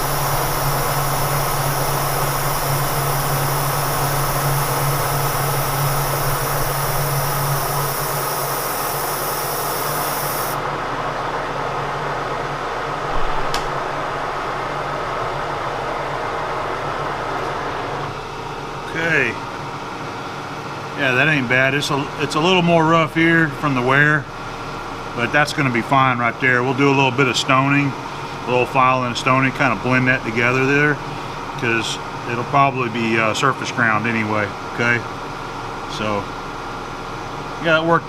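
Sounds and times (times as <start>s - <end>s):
high cutting hiss: 0.0s - 10.6s
milling machine hum: 0.0s - 10.8s
sharp click: 13.2s - 13.7s.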